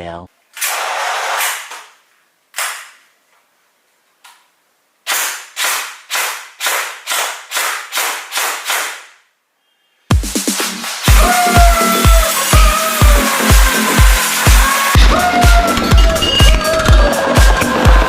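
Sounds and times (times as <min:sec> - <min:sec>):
toy blaster shots: 0:05.1 - 0:09.2.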